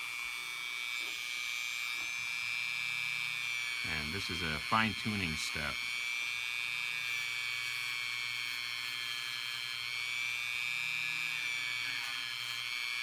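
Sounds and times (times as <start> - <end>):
rotary tool sanding whine: 0.0 - 13.0.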